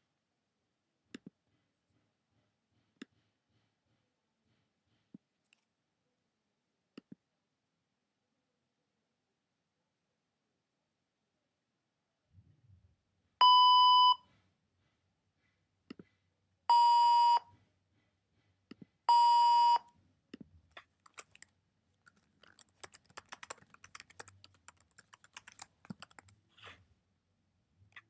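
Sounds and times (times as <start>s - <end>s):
censor beep tone: 13.4s - 14.2s
faint quick irregular clicks: 20.8s - 26.4s.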